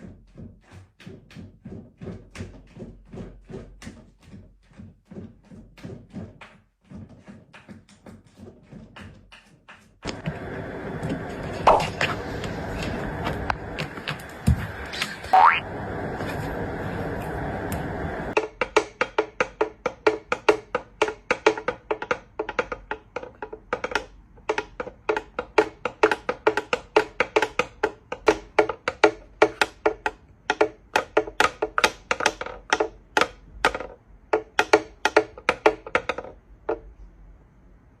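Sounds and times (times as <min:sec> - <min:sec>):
wooden knocking percussion music: 0:18.4 - 0:36.9.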